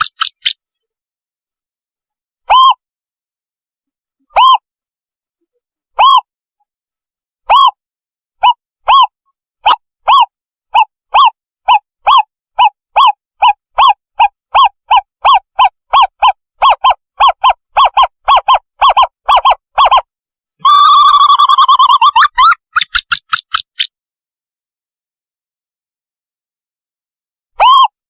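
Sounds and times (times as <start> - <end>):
owl hoots: 7.5 - 7.8, 9.7 - 20.0.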